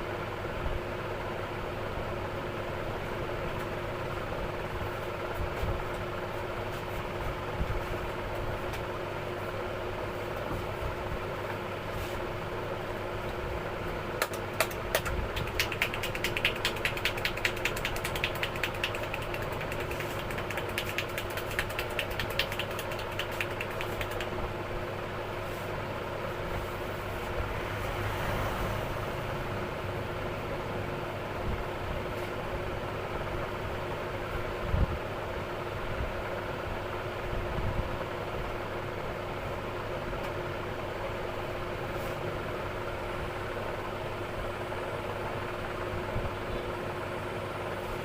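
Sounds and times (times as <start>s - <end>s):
steady mechanical hum: 0.0s - 48.0s
hands slapping and tapping: 14.2s - 24.4s.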